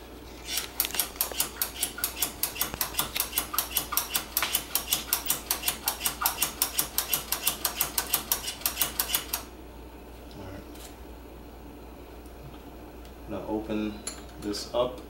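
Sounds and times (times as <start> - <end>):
rapid mechanical clicking: 0.5 - 9.5.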